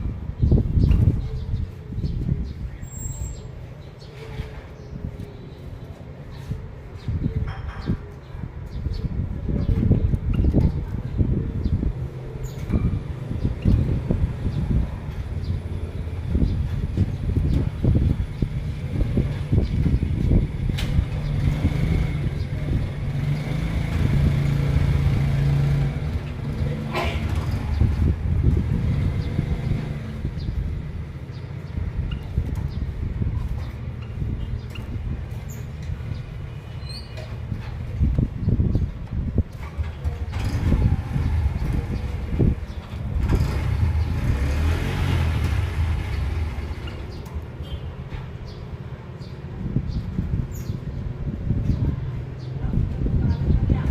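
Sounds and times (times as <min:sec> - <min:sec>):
vehicle engine humming: 0:10.5 - 0:50.4.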